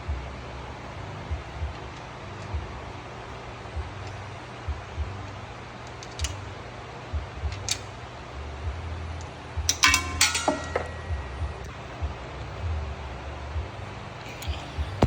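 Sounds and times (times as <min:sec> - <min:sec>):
metal clinks ringing: 0:09.6 - 0:11.7.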